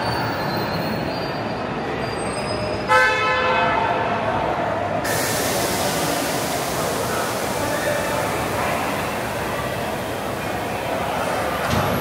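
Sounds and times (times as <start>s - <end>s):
burst of hiss: 5.1s - 11.4s.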